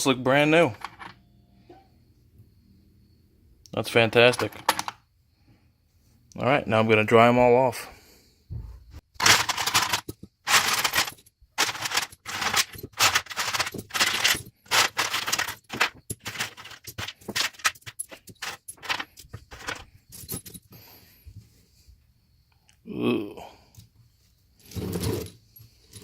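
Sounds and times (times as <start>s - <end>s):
metal nuts and bolts clattering: 0.6s - 1.2s, 4.2s - 5.0s, 9.2s - 20.8s.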